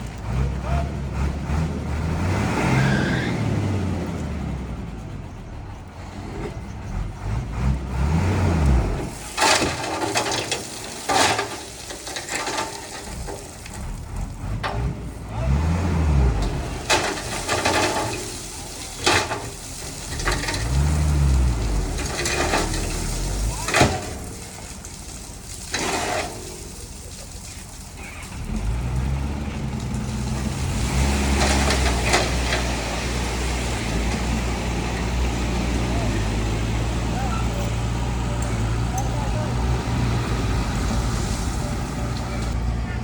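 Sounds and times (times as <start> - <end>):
diesel engine revving: 0.0 - 43.0
hiss and clatter: 9.0 - 15.1, 16.4 - 34.3.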